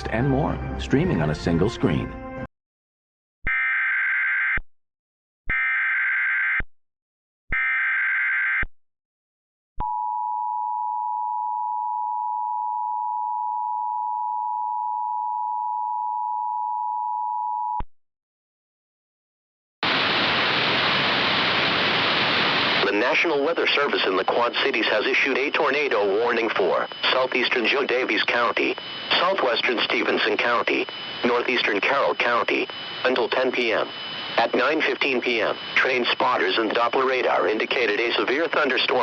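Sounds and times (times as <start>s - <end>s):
radio static: 19.8s - 39.0s
warbling digital data tones: 22.9s - 39.0s.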